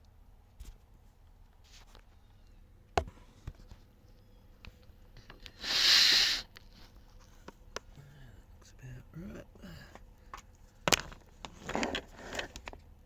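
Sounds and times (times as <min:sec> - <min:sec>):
loud hiss: 0:05.6 - 0:06.5.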